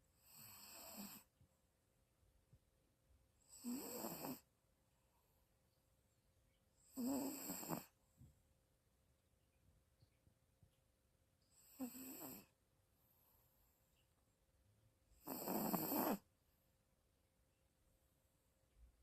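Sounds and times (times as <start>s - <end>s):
dog snoring: 0.2s - 1.3s, 3.4s - 4.5s, 6.8s - 8.0s, 11.5s - 12.5s, 15.2s - 16.3s.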